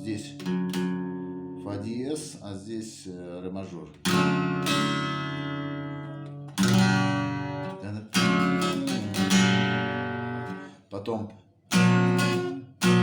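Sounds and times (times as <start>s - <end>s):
acoustic guitar chords strummed: 0.0s - 1.6s, 4.0s - 10.8s, 11.7s - 13.0s.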